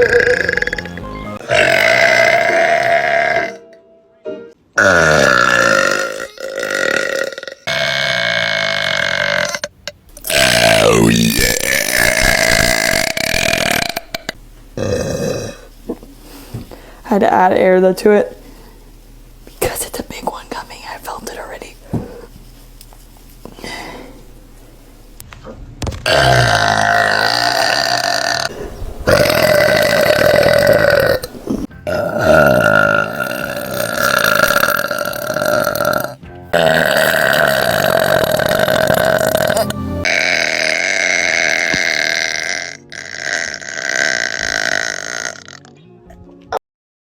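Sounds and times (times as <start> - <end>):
loud drawn-out burps: 0.0 - 3.6, 4.8 - 15.7, 26.0 - 28.5, 29.1 - 45.8.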